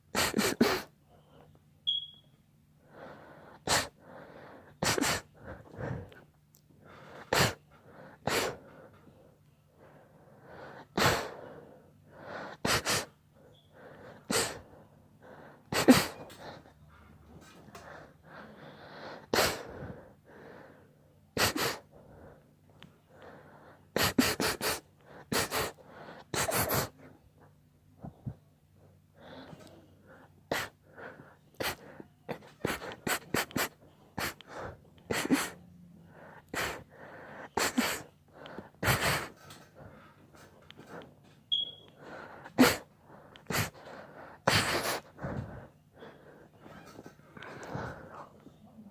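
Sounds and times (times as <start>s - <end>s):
person sneezing: 0.2s - 0.9s, 4.8s - 5.3s, 15.7s - 16.2s, 21.4s - 21.8s, 24.0s - 26.9s, 32.4s - 34.4s, 35.1s - 35.6s, 37.6s - 38.1s, 43.5s - 43.8s, 44.5s - 45.1s.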